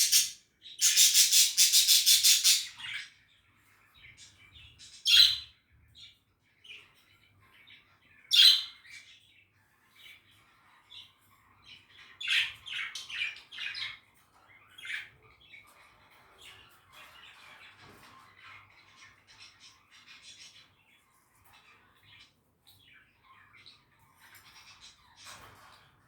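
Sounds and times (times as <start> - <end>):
budgerigar chirping and squawking: 0.0 - 3.1, 5.0 - 5.5, 8.3 - 8.8.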